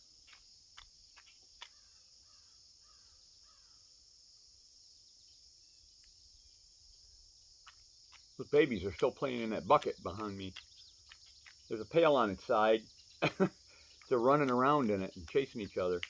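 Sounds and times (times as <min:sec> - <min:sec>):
insects trilling: 0:00.0 - 0:16.0
faint clicks: 0:00.2 - 0:01.9, 0:06.0 - 0:06.2, 0:07.6 - 0:16.0.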